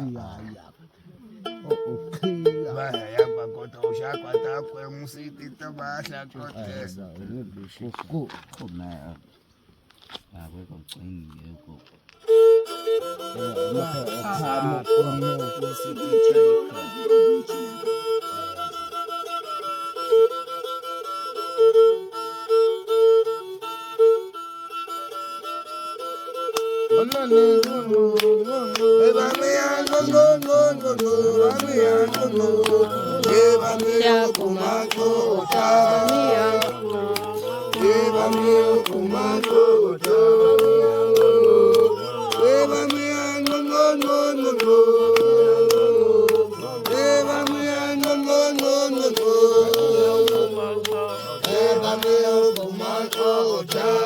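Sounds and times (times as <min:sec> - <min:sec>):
wavering melody: 0:12.3 - 0:54.0
sharp percussive taps: 0:26.5 - 0:53.9.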